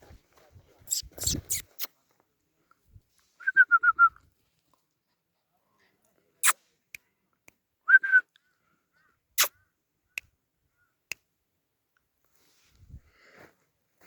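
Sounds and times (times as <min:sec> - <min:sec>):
short high squeak: 0:00.9 - 0:01.9.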